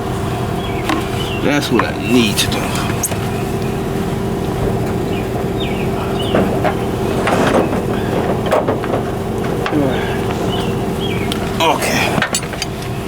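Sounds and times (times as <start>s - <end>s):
steady machine hum: 0.0s - 13.0s
clicks and rattles: 6.3s - 13.0s.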